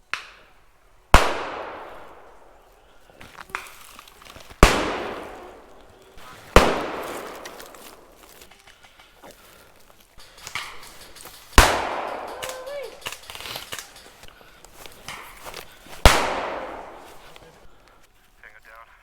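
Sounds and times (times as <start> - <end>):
grenade bangs echoing: 0.0 - 18.0
faint clicks: 7.3 - 16.0.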